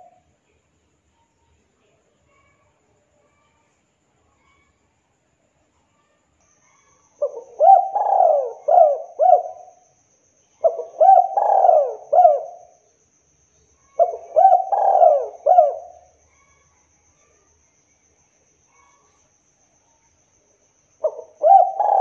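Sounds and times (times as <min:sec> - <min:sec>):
dove cooing: 0:07.2 - 0:09.8, 0:10.6 - 0:12.7, 0:14.0 - 0:16.1, 0:21.0 - 0:22.0.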